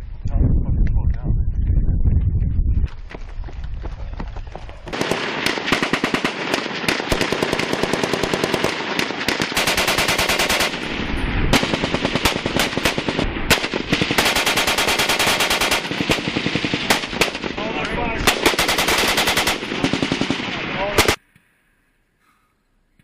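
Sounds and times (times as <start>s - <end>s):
machine-gun fire: 4.9s - 21.2s.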